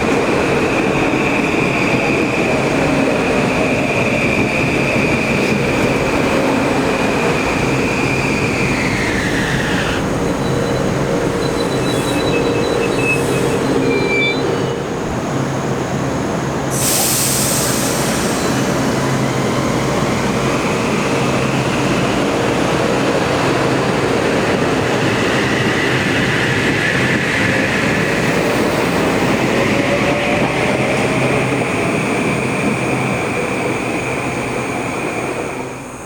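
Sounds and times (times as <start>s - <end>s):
train wheels rushing on rail: 0.0s - 36.0s
high hiss: 16.7s - 19.0s.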